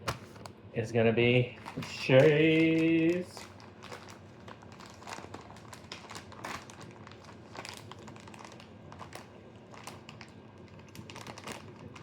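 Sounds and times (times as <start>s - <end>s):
plastic bag crinkling: 1.4s - 12.0s.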